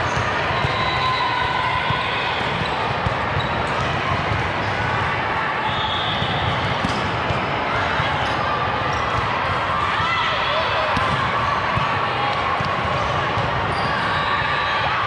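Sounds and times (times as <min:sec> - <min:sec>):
spectator chatter: 0:00.0 - 0:15.0
sneakers squeaking: 0:01.9 - 0:04.9, 0:05.6 - 0:09.5, 0:12.6 - 0:14.4.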